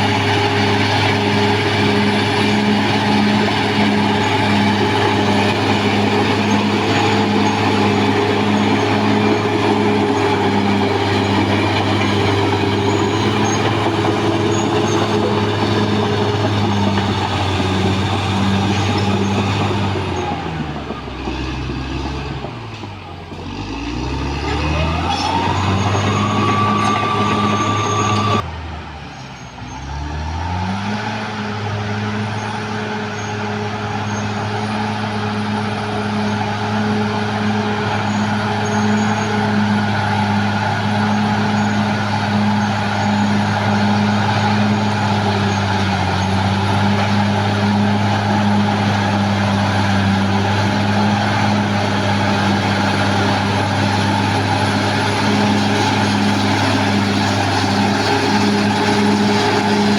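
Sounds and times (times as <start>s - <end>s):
bulldozer diesel engine revving: 0.0s - 28.8s, 29.6s - 59.9s.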